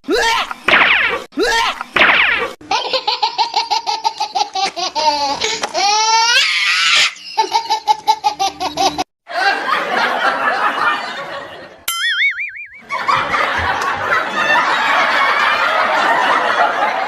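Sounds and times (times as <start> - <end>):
person laughing hard: 2.7 - 6.3.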